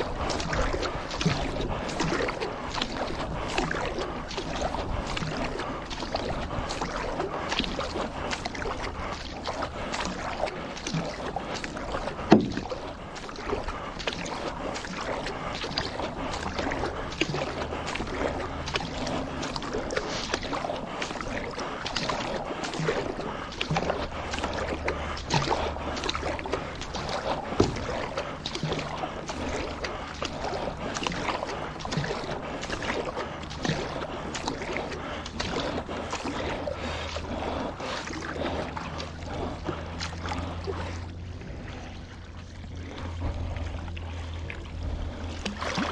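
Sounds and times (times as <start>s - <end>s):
paddle splashing water: 0.0s - 45.9s
knock on paddle board: 12.3s - 12.6s.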